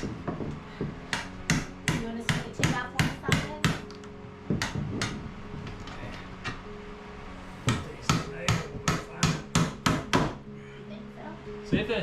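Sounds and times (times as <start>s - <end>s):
hammer strikes: 0.0s - 5.8s, 7.6s - 10.4s.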